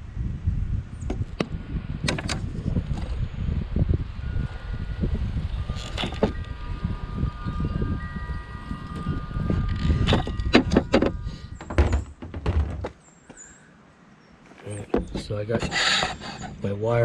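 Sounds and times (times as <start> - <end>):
rough handling noise: 5.7 - 6.5, 8.9 - 13.4, 14.4 - 16.7
metal tools clinking: 9.7 - 12.2.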